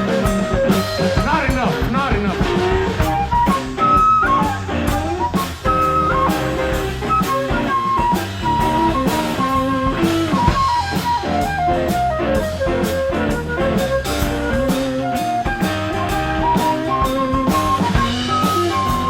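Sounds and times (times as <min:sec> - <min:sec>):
steady drum beat: 0:00.0 - 0:19.0.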